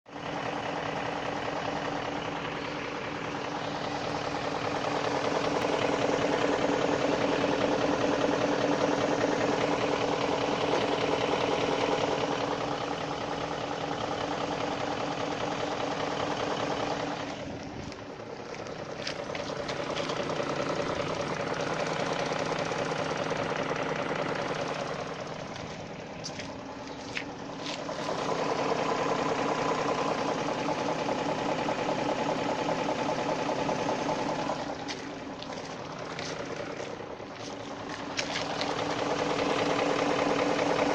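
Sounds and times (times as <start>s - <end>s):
car engine running: 0.1s - 40.9s
rhythmic engine knock: 0.1s - 40.9s.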